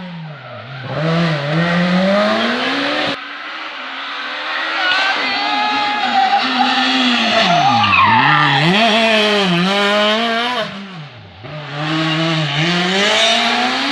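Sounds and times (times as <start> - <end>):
rally car engine revving: 0.0 - 13.9
tyre squeal: 0.2 - 9.5.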